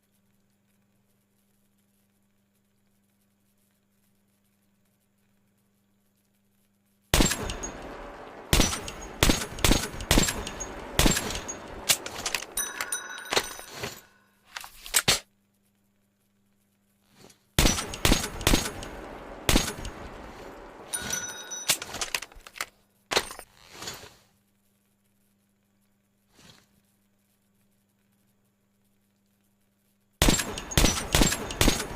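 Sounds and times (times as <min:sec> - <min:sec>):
metallic ringing clicks: 0:07.3 - 0:14.1, 0:19.6 - 0:22.4.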